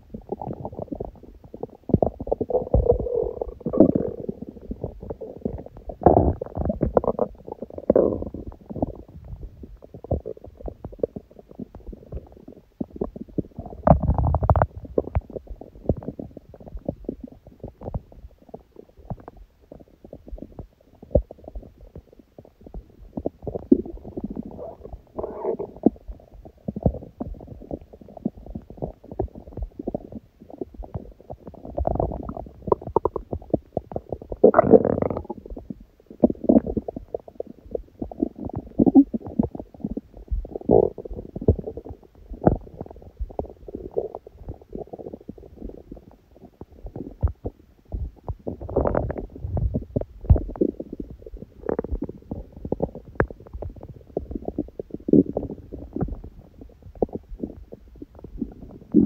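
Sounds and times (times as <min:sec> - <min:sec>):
stomach growling and gurgling: 0:00.0 - 0:59.0.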